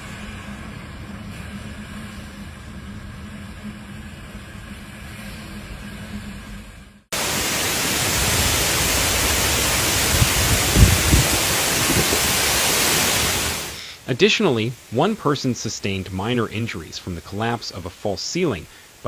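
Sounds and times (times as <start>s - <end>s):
low steady hum: 0.0s - 19.0s
wind gusting across microphone: 7.2s - 13.8s.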